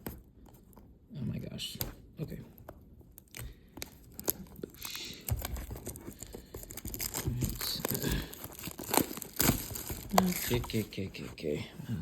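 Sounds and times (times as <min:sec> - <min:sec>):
foil wrapper crinkling and tearing: 0:03.2 - 0:11.1.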